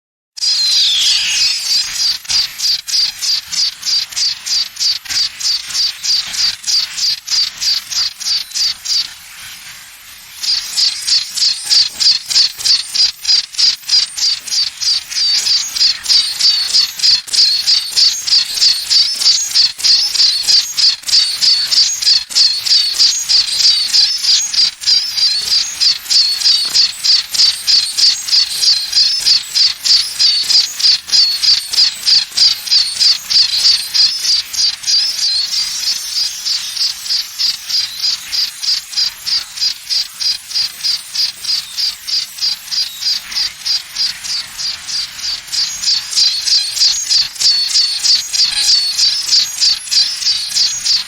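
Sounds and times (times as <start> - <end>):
high-pitched chirping: 0.4 - 9.3, 10.4 - 51.0.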